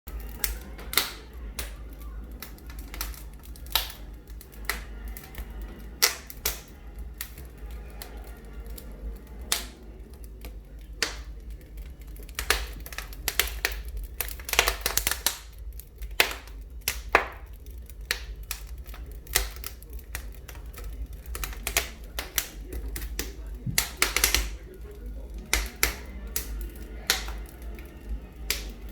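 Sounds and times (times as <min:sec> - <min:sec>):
fire pops and snaps: 0:00.1 - 0:28.9
wood fire crackling: 0:00.1 - 0:28.9
steady low hum: 0:17.5 - 0:28.9.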